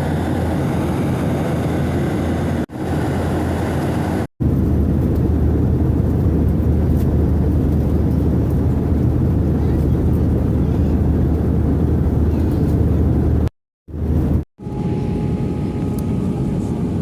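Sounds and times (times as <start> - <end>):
airplane noise: 0.0 - 17.0.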